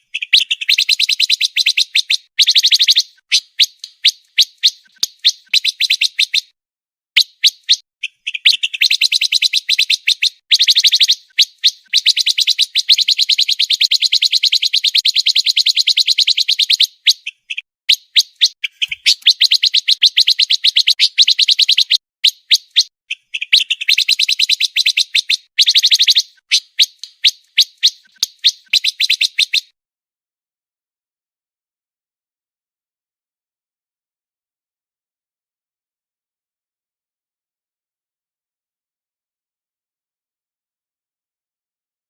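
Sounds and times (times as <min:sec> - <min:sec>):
songbird rapid chattering song: 0:00.0 - 0:06.5, 0:07.2 - 0:29.7.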